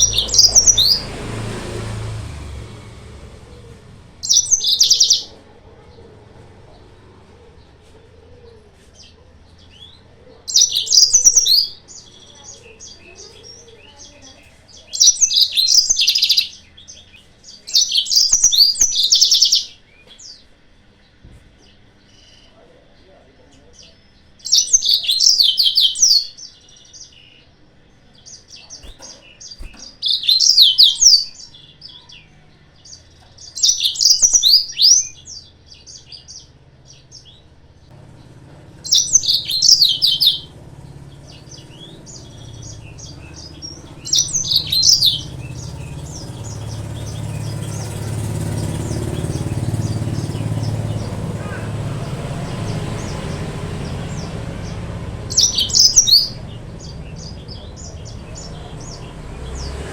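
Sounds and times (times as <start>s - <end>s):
low rumble: 0.0s - 4.6s, 37.2s - 59.7s
canary twittering: 0.0s - 20.5s, 22.0s - 59.8s.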